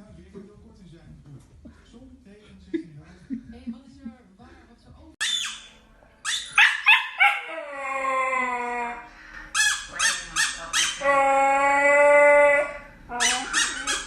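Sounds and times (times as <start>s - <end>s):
dog barking: 6.2s - 7.6s, 12.6s - 14.0s
dog howling: 6.6s - 9.1s, 10.1s - 14.0s.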